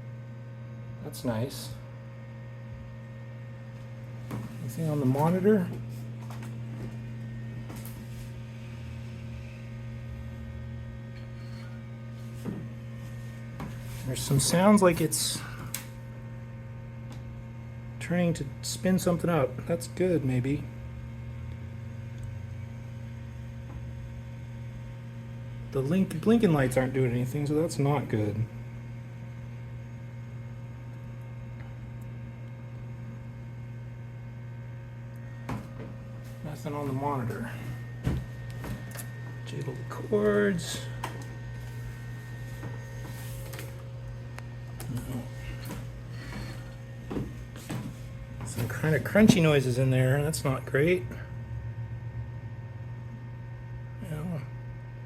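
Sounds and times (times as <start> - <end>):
computer fan hum: 0.0 - 55.0.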